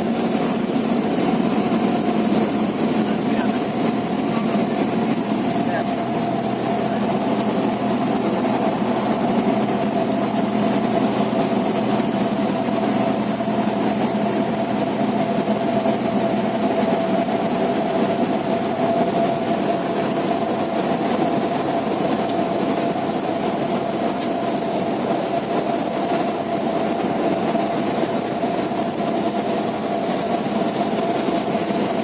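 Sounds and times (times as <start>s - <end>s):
propeller plane engine droning: 0.0s - 32.0s.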